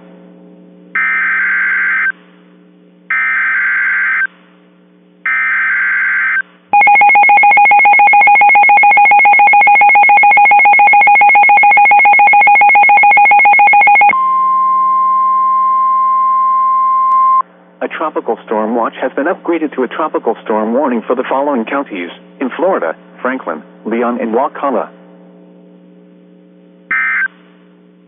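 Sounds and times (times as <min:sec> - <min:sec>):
pulsing two-tone alarm: 0:01.0 - 0:02.1, 0:03.1 - 0:04.3, 0:05.3 - 0:14.3, 0:26.9 - 0:27.3
steady warning alarm tone: 0:01.0 - 0:02.2, 0:03.1 - 0:04.3, 0:05.3 - 0:15.4, 0:26.9 - 0:27.3.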